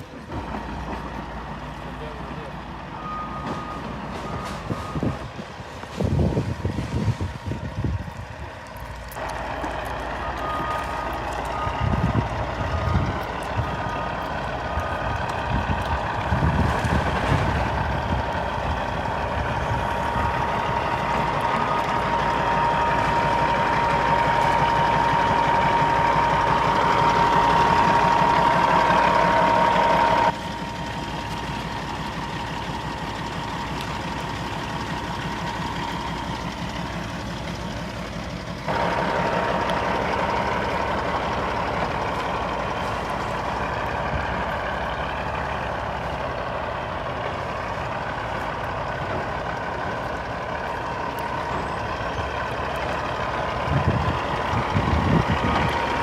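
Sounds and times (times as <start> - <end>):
diesel machinery running: 0.0 - 56.0.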